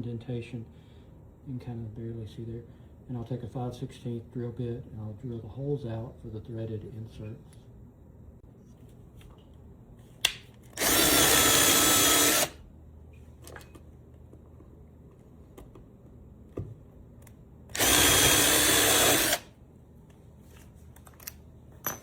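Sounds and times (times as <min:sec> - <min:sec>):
power drill boring into wood: 0:10.8 - 0:12.6, 0:17.7 - 0:19.5.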